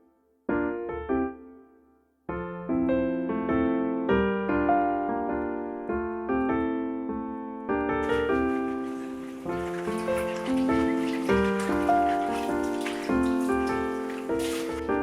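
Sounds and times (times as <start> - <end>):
solo piano music: 0.0 - 15.0.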